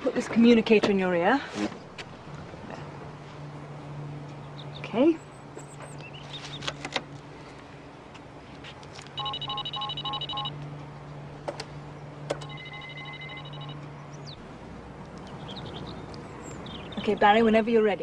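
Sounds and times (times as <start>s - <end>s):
low electrical hum: 0.0s - 18.0s
rapid pulsing electronic beeps: 9.2s - 10.5s, 12.4s - 13.8s.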